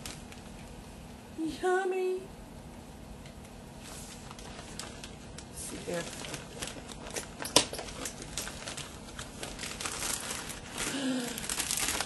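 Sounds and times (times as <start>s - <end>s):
wrapping paper crinkling and tearing: 0.0s - 0.5s, 3.8s - 12.0s.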